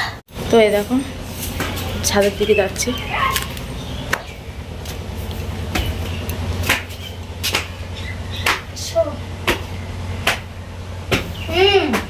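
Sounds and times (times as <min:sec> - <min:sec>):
steady low hum: 0:00.0 - 0:12.0
footsteps tapping: 0:01.4 - 0:08.8, 0:09.4 - 0:12.0.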